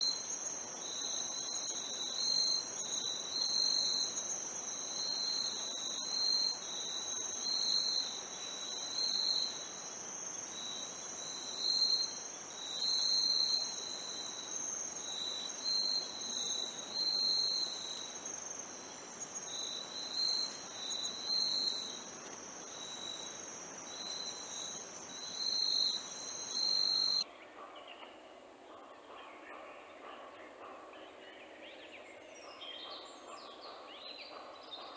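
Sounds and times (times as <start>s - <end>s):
insect high-pitched trill: 0.0s - 27.2s
insect lower call: 0.0s - 34.9s
outdoor background: 0.0s - 34.9s.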